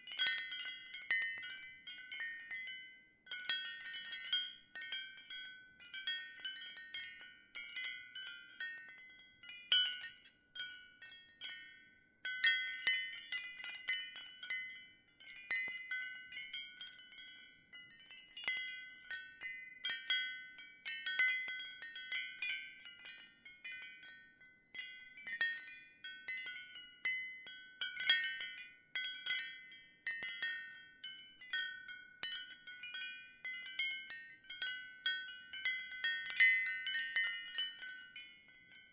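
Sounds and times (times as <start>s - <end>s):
wind chimes ringing: 0.0s - 38.9s.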